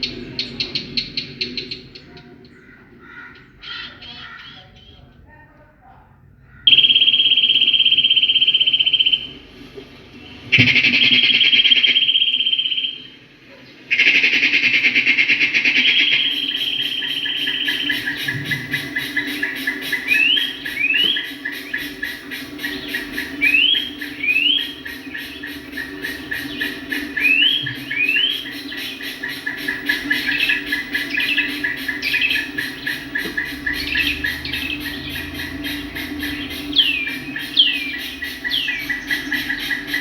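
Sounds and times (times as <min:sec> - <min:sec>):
steady high chirring: 0:00.0 - 0:05.2, 0:06.3 - 0:40.0
birds trilling: 0:00.0 - 0:05.6, 0:06.4 - 0:40.0
short rising whistled bird notes: 0:15.8 - 0:29.5.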